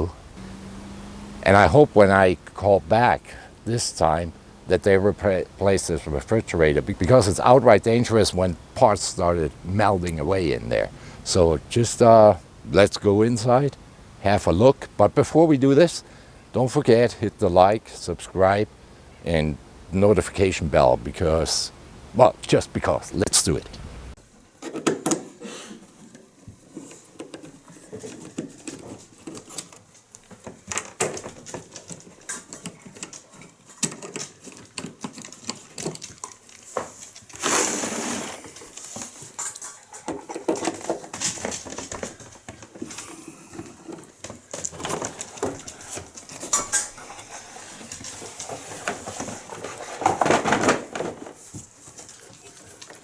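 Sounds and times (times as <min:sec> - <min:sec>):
hard objects clattering: 0:24.6 - 0:53.0
scraping rushes: 0:37.4 - 0:38.8.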